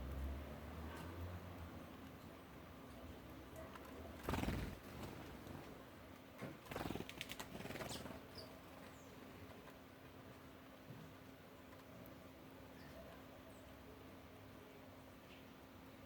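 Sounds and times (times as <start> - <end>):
wingbeats rustling: 3.9 - 5.8, 6.6 - 9.8
faint high bird chirps: 7.8 - 9.2, 12.7 - 13.8.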